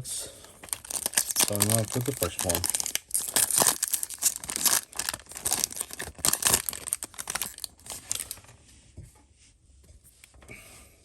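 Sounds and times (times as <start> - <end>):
foil wrapper tearing and crinkling: 0.5 - 8.4.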